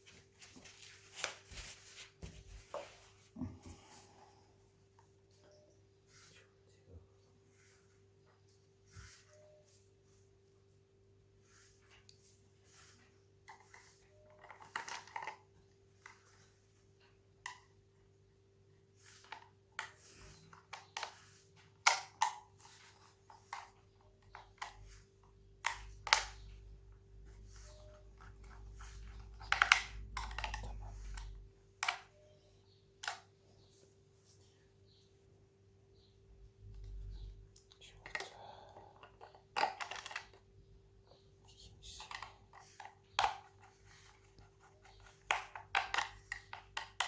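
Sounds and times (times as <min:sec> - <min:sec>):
plastic parts clicking and clattering: 0:14.3 - 0:16.2, 0:39.0 - 0:40.5.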